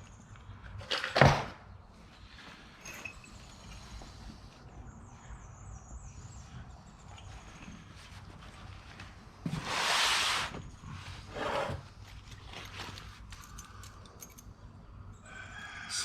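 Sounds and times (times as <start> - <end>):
faint handling noises: 6.4 - 9.8, 10.4 - 14.8
rustling of a bag: 7.2 - 14.4.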